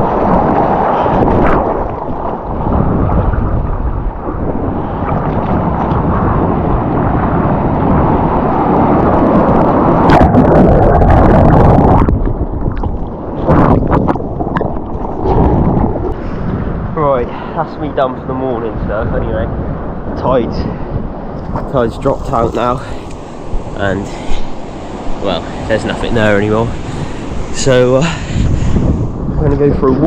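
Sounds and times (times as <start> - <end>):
surf water rushing: 0.0 - 30.0
wind buffeting microphone: 0.0 - 30.0
water splashing: 21.2 - 29.5.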